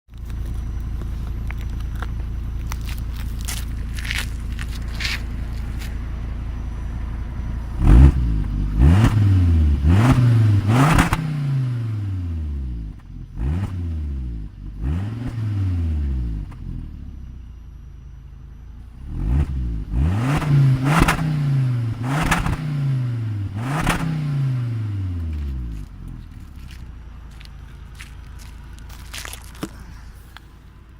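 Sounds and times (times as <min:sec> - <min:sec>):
car engine idling and revving: 0:00.1 - 0:30.9.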